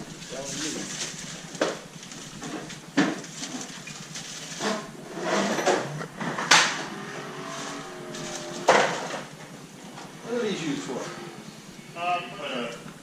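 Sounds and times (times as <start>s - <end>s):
soft rustling: 0.0s - 10.2s.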